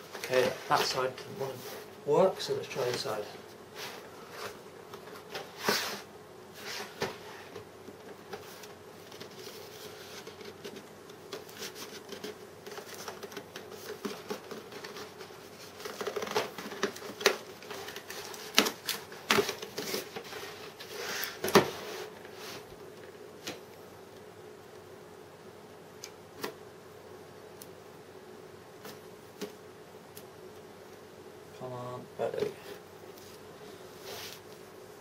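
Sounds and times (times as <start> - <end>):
faint steady hum: 0.0 - 35.0
packaging rustling and scraping: 2.7 - 23.5.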